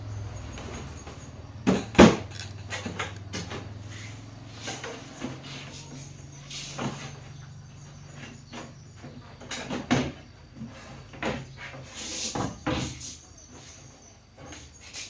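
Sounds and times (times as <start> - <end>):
knocks and clatters: 0.0 - 6.2.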